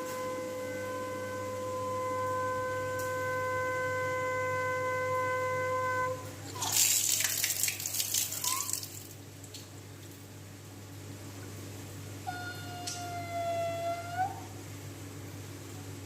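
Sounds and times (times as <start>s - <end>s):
long pitched call: 0.0s - 6.4s, 8.4s - 8.8s, 12.2s - 14.6s.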